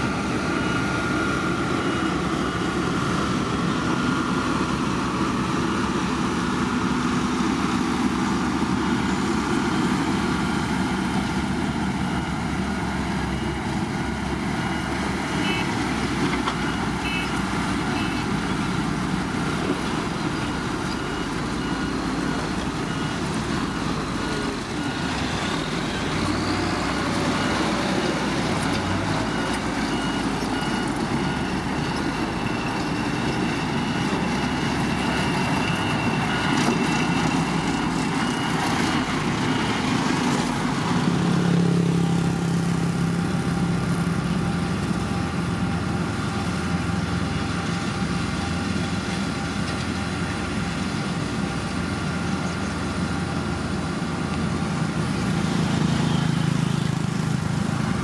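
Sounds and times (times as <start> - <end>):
diesel grader engine working: 0.0 - 58.0
faint high beep: 56.0 - 56.8.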